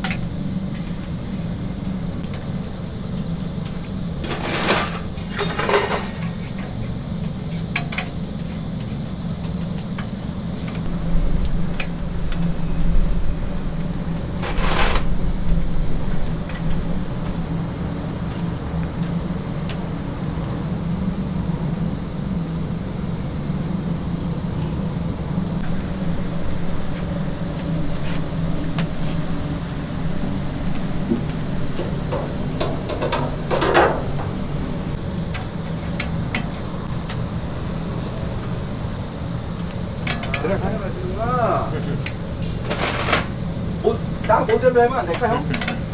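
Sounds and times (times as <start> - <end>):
low machine hum: 10.4 - 42.7
clatter: 30.2 - 35.0.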